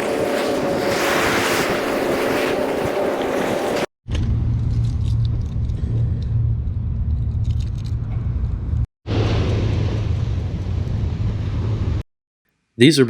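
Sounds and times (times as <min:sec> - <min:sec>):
surf: 0:00.0 - 0:03.9.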